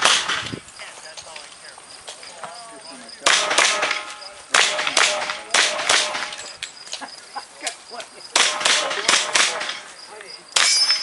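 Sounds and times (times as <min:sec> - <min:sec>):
handgun shots: 0:03.2 - 0:06.5, 0:08.4 - 0:09.8.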